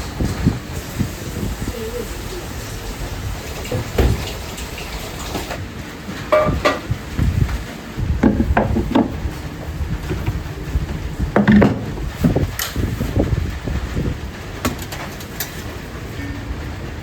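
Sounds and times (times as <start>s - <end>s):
dishes and utensils clinking: 6.3s - 6.9s.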